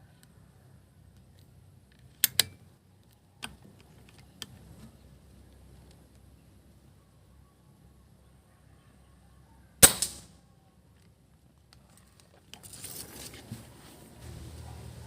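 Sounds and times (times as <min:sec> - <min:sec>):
air rifle shot: 0:09.8 - 0:10.3
rustling crackling noise: 0:11.0 - 0:15.0.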